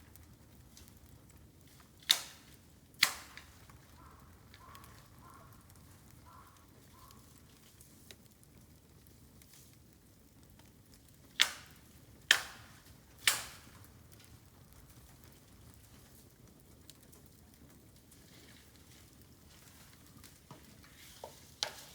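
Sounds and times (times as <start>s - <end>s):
fire crackling: 0.0s - 21.9s
bamboo bursting with loud cracks: 0.1s - 6.0s, 11.2s - 15.9s.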